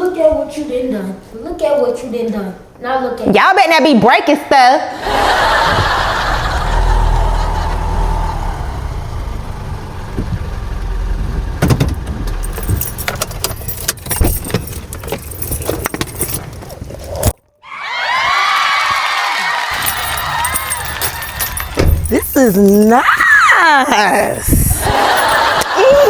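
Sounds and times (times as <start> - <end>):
sharp clicks and rattles: 11.6 - 17.4, 19.8 - 25.7.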